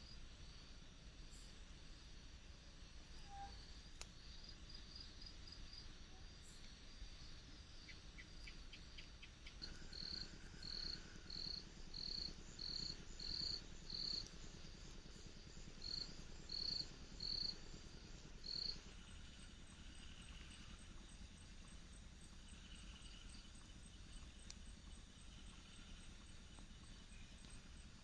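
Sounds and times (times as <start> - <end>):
faint steady background noise: 0.0 - 28.0.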